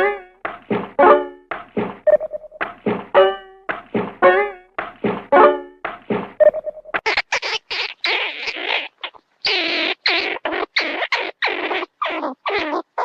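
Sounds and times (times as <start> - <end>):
cartoon squeaky chattering: 7.0 - 13.0.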